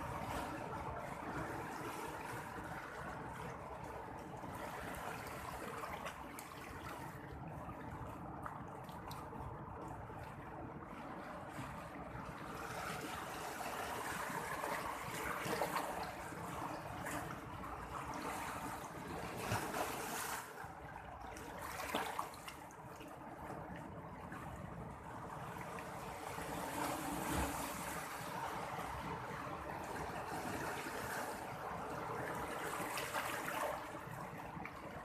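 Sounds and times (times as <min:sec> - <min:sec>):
sea surf washing: 0:25.3 - 0:35.0.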